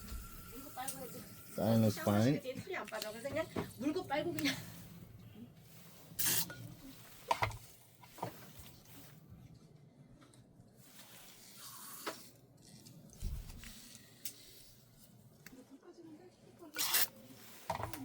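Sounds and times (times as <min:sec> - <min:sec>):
soft rustle: 0:03.0 - 0:09.7, 0:10.7 - 0:12.0, 0:17.0 - 0:18.0.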